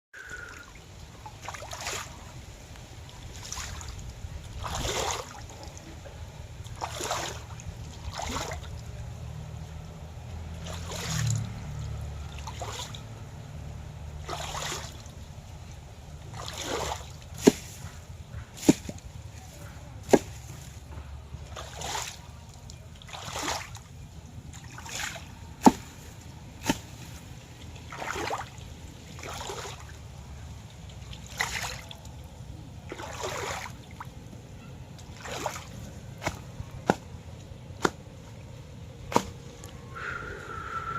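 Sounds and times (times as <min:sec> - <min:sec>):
water splashing and sloshing: 0:00.2 - 0:40.9
low hum: 0:35.7 - 0:40.9.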